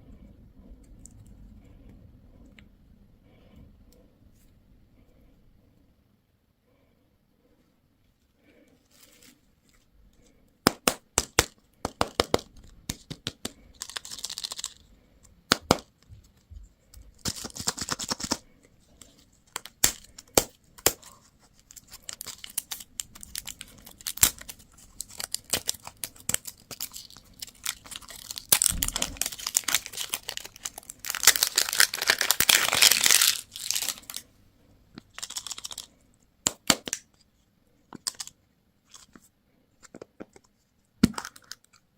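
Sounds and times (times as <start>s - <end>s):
packaging crinkling: 13.5s - 14.9s, 19.5s - 34.2s, 35.0s - 35.9s.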